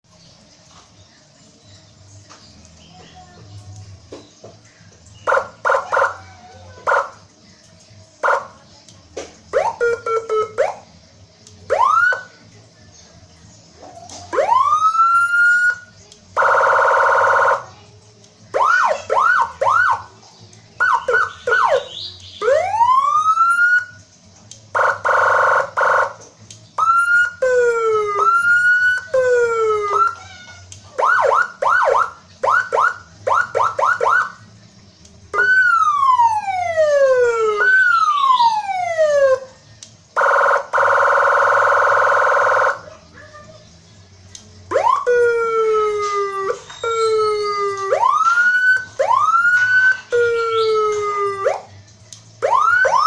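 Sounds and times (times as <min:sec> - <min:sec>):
electronic police siren: 0:05.2 - 0:06.2, 0:06.8 - 0:07.2, 0:09.5 - 0:10.8, 0:11.7 - 0:12.3, 0:14.2 - 0:17.7, 0:18.5 - 0:20.1, 0:20.8 - 0:24.0, 0:24.7 - 0:26.2, 0:26.8 - 0:30.2, 0:31.0 - 0:34.4, 0:35.3 - 0:39.5, 0:40.2 - 0:42.9, 0:44.7 - 0:51.7, 0:52.4 - 0:53.0.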